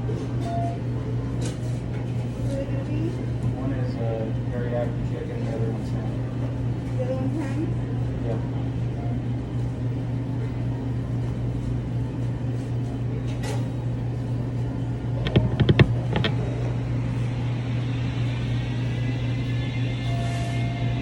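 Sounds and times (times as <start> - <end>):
kitchen equipment humming: 14.7 - 21.0
rattle of sharp clicks: 15.2 - 16.4.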